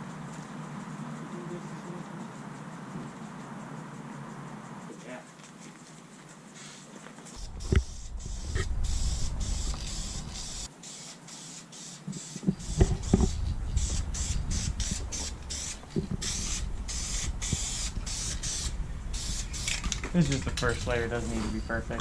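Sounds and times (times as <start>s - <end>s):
low rumble: 7.4s - 10.7s, 13.0s - 22.0s
spray can hissing bursts: 7.4s - 19.9s.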